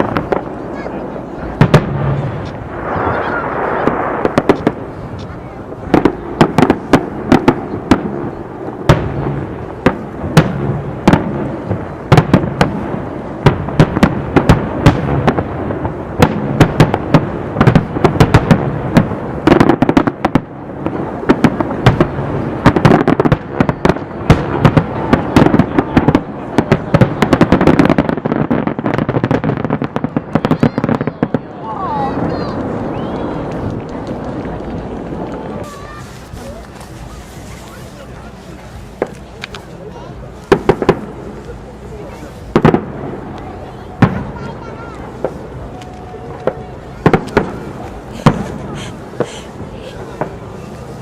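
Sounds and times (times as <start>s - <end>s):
fireworks crackling: 0.0s - 51.0s
firework shells bursting: 32.2s - 51.0s.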